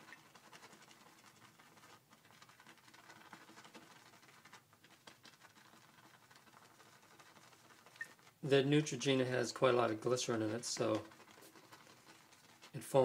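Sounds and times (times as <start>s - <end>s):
shaving brush whipping lather: 7.2s - 13.0s.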